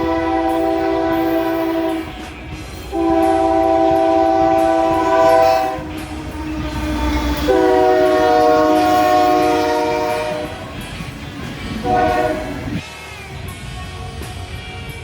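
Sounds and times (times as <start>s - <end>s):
train air horn blasts: 0.0s - 10.8s, 11.8s - 12.8s
passing train rumble: 0.0s - 15.0s.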